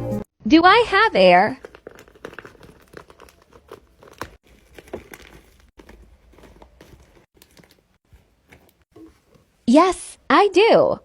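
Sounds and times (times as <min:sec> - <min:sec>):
paper crinkling and crackling: 0:01.5 - 0:09.6.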